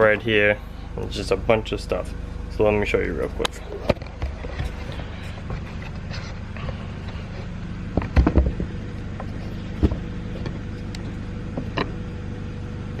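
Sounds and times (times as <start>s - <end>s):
steady low hum: 0.0s - 13.0s.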